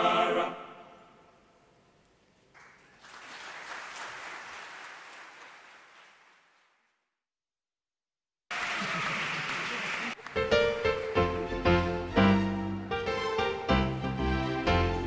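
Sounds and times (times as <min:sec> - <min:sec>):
chanted choral singing: 0:00.0 - 0:01.1
applause: 0:02.5 - 0:07.1, 0:08.5 - 0:11.1.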